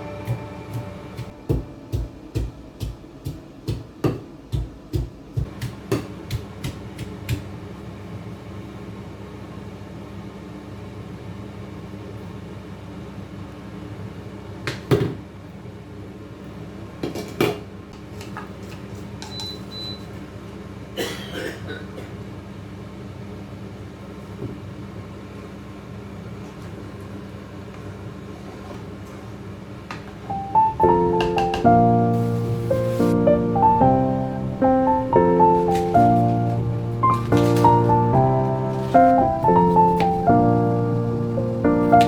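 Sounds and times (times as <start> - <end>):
regular knocks: 0.0 - 5.8, 30.4 - 42.0
appliance humming: 0.0 - 8.9, 25.9 - 42.0.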